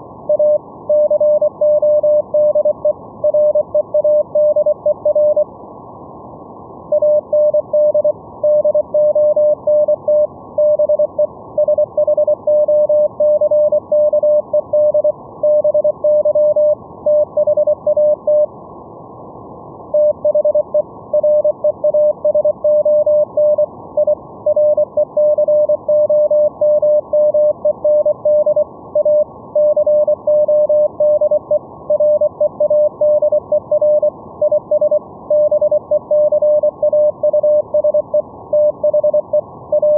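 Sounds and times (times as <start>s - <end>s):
morse code tone: 20.0s - 39.9s.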